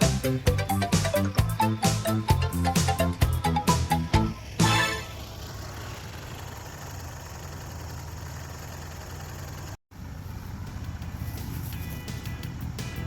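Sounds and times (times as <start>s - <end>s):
music snippet: 0.0s - 5.1s
engine idling: 0.0s - 13.0s.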